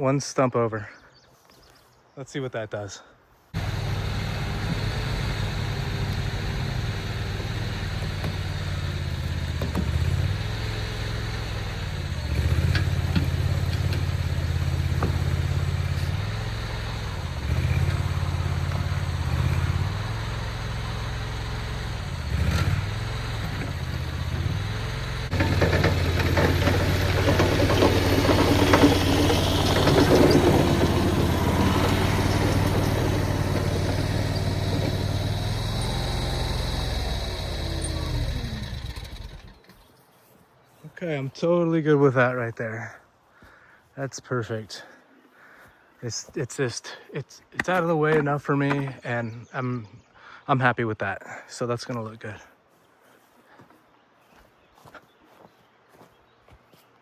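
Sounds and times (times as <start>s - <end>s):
skid steer engine running: 3.5s - 39.9s.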